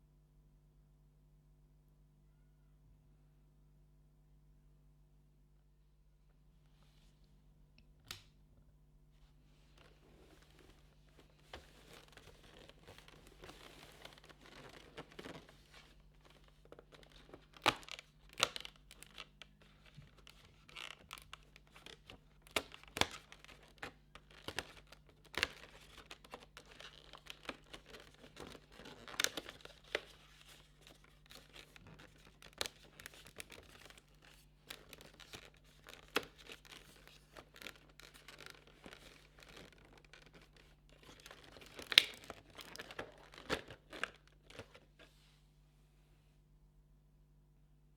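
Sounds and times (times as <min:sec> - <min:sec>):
packaging tearing and crinkling: 0:11.7 - 0:44.8.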